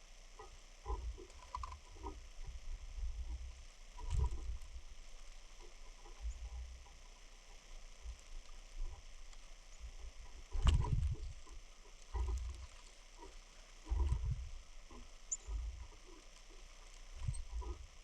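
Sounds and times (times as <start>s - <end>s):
faint high chirp: 15.2s - 15.6s.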